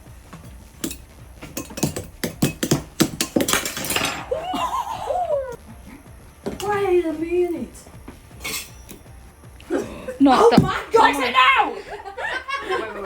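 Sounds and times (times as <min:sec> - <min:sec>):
high wavering whine: 0:00.0 - 0:13.0
metal knocks and clinks: 0:00.4 - 0:04.4.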